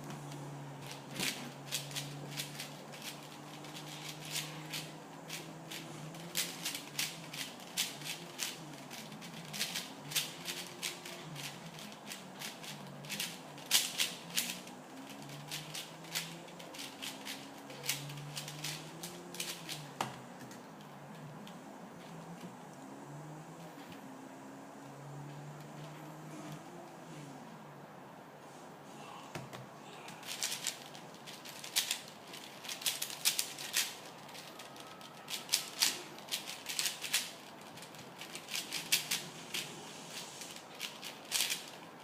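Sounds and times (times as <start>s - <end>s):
plastic puzzle cube clicking: 0.8s - 19.9s, 30.2s - 39.7s, 40.5s - 41.8s.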